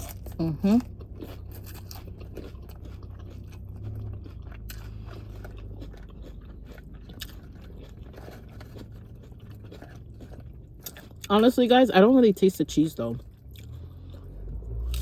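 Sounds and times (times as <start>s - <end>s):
person crunching chips: 0.0s - 15.0s.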